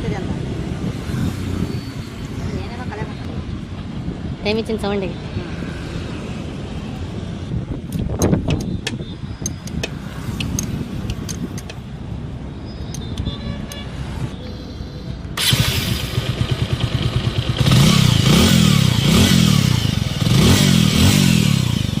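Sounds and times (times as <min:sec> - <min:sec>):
motorcycle engine idling and revving: 0:00.0 - 0:22.0
sharp clicks: 0:07.9 - 0:11.8.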